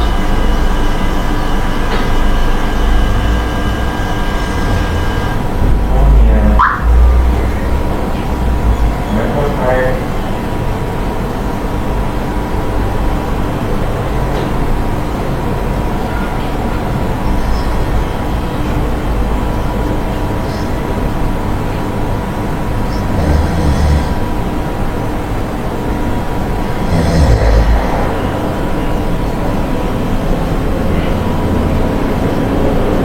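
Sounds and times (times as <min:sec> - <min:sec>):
steady low rumble: 0:05.4 - 0:14.2
person snoring: 0:23.1 - 0:24.2, 0:26.8 - 0:28.0.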